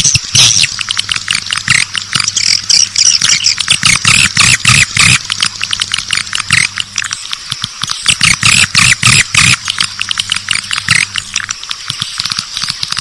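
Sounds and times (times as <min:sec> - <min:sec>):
low steady hum: 0:00.0 - 0:13.0
birds twittering chirps: 0:02.2 - 0:03.8.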